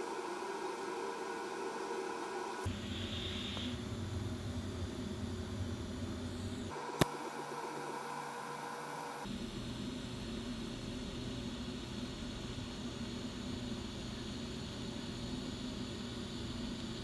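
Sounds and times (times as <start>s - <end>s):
background hum and hiss: 0.0s - 17.0s
sharp click: 7.0s - 7.2s.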